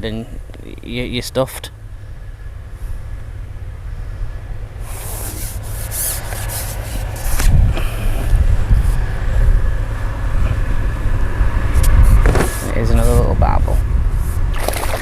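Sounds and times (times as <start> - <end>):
wind buffeting microphone: 0.0 - 15.0
handling noise rustling: 4.8 - 9.0, 11.7 - 13.2.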